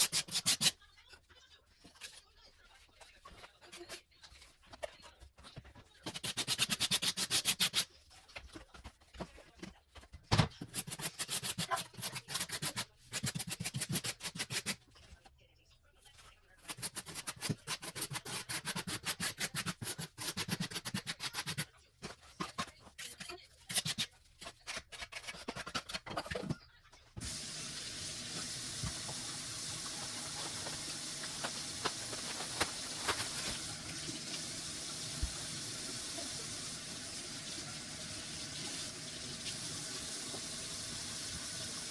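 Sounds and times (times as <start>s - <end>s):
water running from tap: 27.2s - 41.9s
grout scraping over tile: 28.9s - 33.7s.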